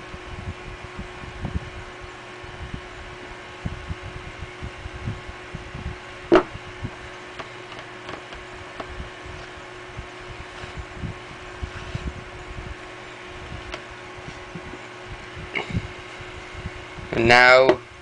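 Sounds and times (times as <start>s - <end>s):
steady hum: 0.0s - 18.0s.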